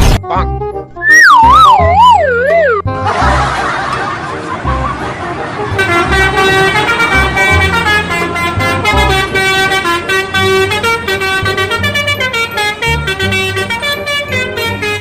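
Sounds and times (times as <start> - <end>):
multi-tone bus air horn melody: 4.1 - 15.0.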